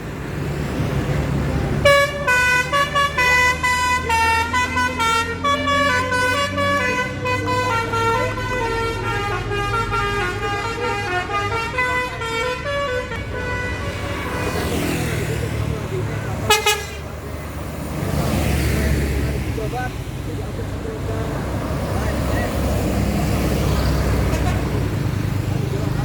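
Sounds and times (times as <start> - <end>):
bus engine rumble: 0.0 - 26.0
bus horn playing multi-note tune: 1.8 - 14.8, 16.5 - 17.1.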